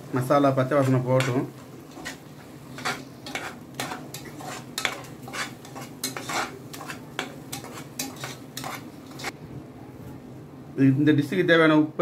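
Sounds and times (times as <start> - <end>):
low sizzle: 0.0 - 12.0
metal spoon scraping a pot: 0.8 - 9.4.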